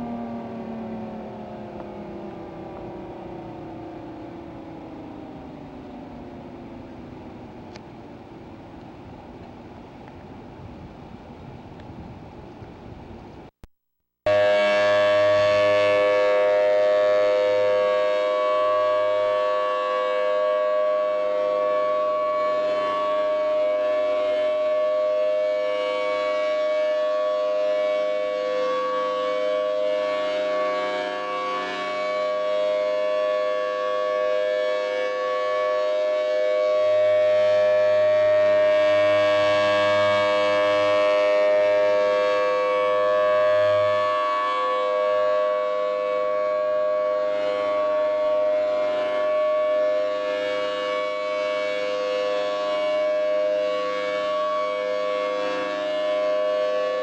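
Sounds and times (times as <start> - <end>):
warning siren steady chord: 0.0 - 13.4, 14.2 - 57.0.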